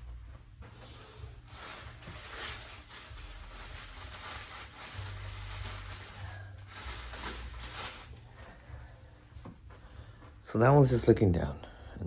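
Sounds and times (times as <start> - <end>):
packaging rustling and crinkling: 1.5 - 8.2.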